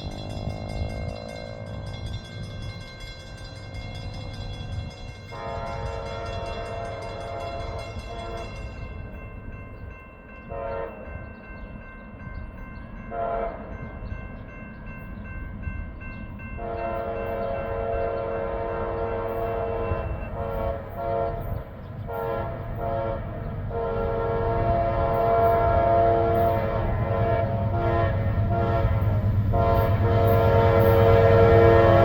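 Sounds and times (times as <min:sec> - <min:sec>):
passing train rumble: 0:00.0 - 0:32.0
locomotive air horn: 0:05.3 - 0:08.6, 0:10.5 - 0:11.2, 0:13.1 - 0:13.7, 0:16.6 - 0:32.0.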